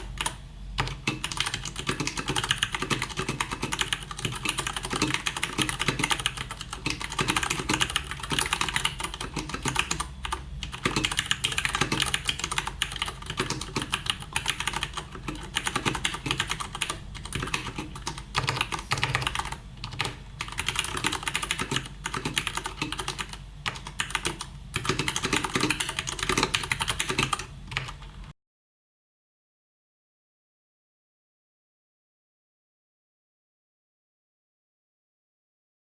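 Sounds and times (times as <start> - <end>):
typing on mechanical keyboard: 0.0 - 28.3.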